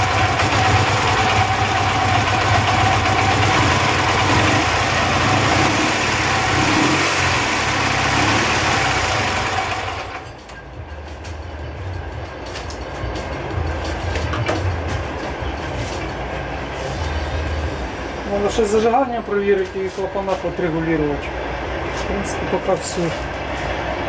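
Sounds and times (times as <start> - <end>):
engine knock: 0.0 - 10.3
motorcycle engine running: 0.0 - 10.4.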